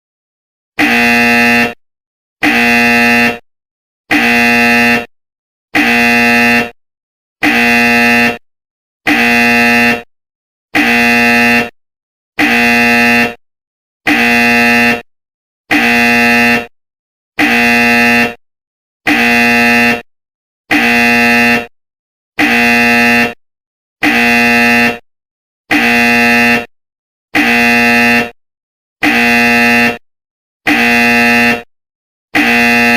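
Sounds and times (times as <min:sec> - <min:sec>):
wrong-answer buzzer: 0:00.8 - 0:01.8, 0:02.4 - 0:03.5, 0:04.1 - 0:05.1, 0:05.7 - 0:06.8, 0:07.4 - 0:10.1, 0:10.7 - 0:11.8, 0:12.4 - 0:13.4, 0:14.0 - 0:15.1, 0:15.7 - 0:16.8, 0:17.4 - 0:18.4, 0:19.0 - 0:20.1, 0:20.7 - 0:21.8, 0:22.4 - 0:23.4, 0:24.0 - 0:25.1, 0:25.7 - 0:26.7, 0:27.3 - 0:28.4, 0:29.0 - 0:31.7, 0:32.3 - 0:32.9.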